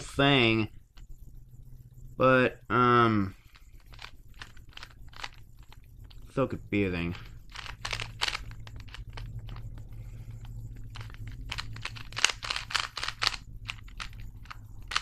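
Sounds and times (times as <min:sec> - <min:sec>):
low steady hum: 0:00.0 - 0:15.0
plastic puzzle cube clicking: 0:03.5 - 0:05.8, 0:07.5 - 0:09.6, 0:10.4 - 0:15.0.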